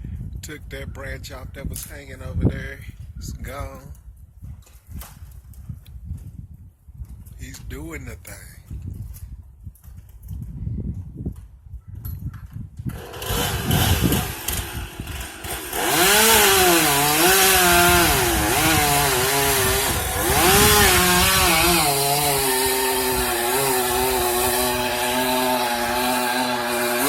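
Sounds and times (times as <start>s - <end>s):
chainsaw cutting: 12.9s - 27.0s.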